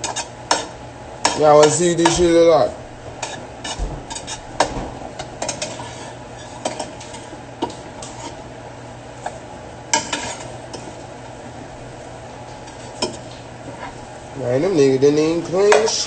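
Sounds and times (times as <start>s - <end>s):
utensils tapping against dishes: 0.0s - 2.3s, 3.2s - 8.4s, 9.2s - 10.9s, 12.5s - 14.0s, 15.6s - 16.0s
steady low hum: 0.0s - 16.0s.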